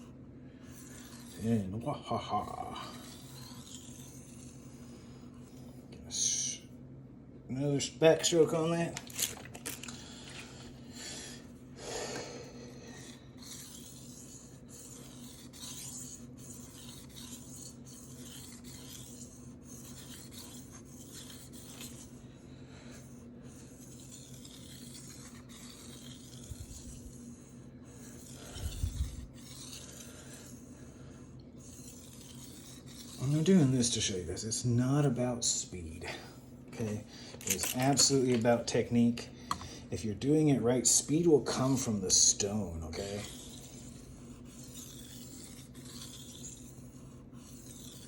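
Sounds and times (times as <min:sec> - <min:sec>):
knife scraping on whetstone: 0:00.6 - 0:05.8, 0:12.8 - 0:22.2, 0:22.9 - 0:35.1, 0:40.9 - 0:48.0.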